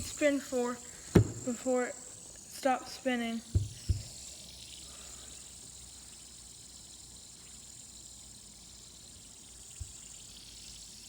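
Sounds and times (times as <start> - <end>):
fidget spinner whirring: 0.0 - 11.0
soft low knock: 1.1 - 1.5, 3.5 - 4.1.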